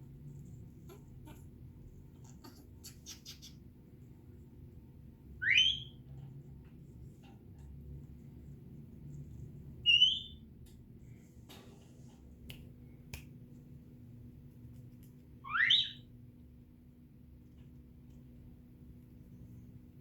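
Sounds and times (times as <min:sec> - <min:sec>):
parrot whistling: 0:05.4 - 0:06.0, 0:09.8 - 0:10.4, 0:15.4 - 0:16.0.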